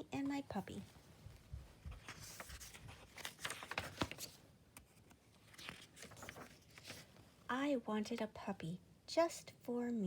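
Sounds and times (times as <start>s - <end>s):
paper rustling: 1.8s - 7.2s.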